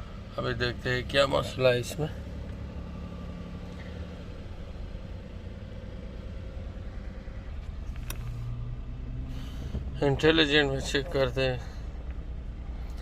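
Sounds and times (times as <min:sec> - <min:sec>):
car engine idling: 0:00.0 - 0:13.0.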